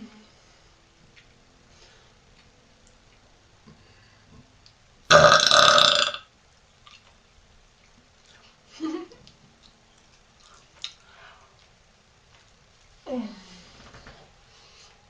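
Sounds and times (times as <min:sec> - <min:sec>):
woman burping: 0:05.1 - 0:06.2.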